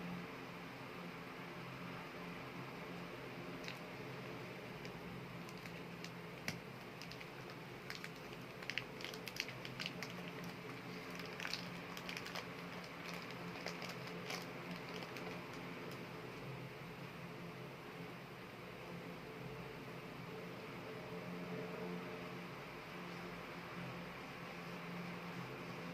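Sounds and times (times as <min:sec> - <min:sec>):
steady low hum: 0:00.0 - 0:25.9
clay packaging clicks and crinkles: 0:03.6 - 0:16.1.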